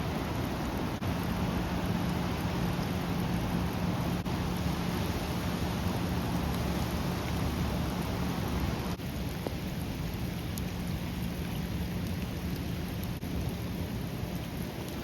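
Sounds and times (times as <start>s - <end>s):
waterfall rushing: 0.0s - 9.0s.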